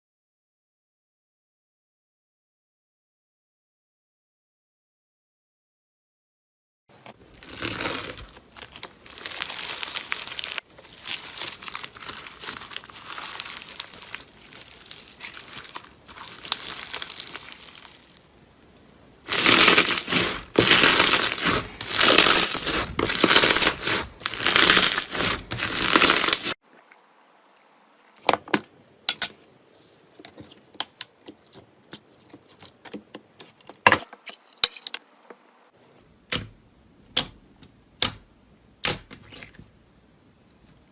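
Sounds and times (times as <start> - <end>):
slime squeezed wet crackling: 7.3 - 18.2, 19.3 - 26.9.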